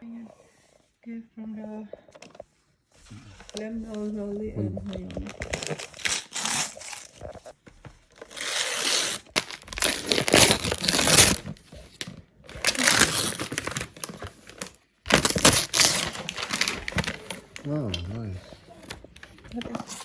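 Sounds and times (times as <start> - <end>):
wrapping paper tearing and crumpling: 4.8 - 20.0.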